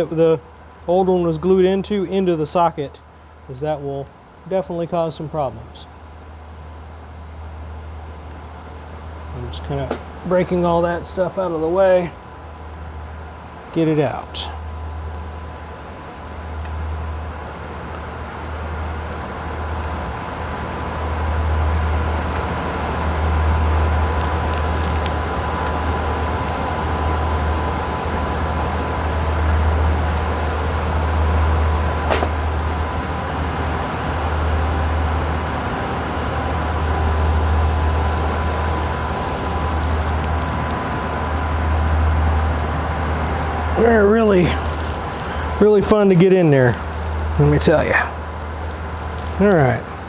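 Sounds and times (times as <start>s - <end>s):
cooling fans rushing air: 0.0s - 50.0s
thin steady whine: 0.0s - 50.0s
sharp click: 32.1s - 32.4s.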